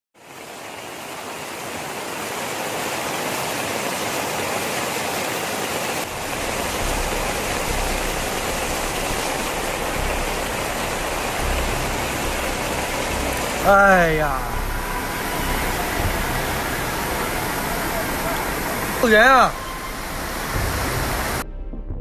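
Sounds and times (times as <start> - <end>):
rushing water roar: 0.2 - 21.4
low rumble: 6.1 - 19.0.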